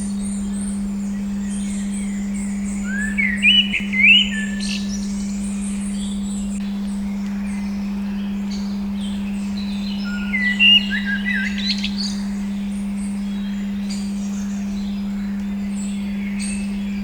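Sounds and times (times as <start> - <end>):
songbirds chirping and whistling: 0.0 - 17.0
steady pure tone: 0.0 - 17.0.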